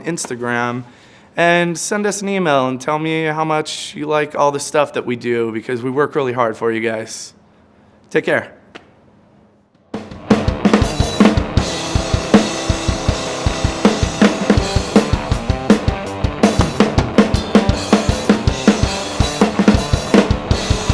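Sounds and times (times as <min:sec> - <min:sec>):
rock drum beat: 0:09.9 - 0:20.9
distorted bass guitar riff: 0:10.1 - 0:20.9.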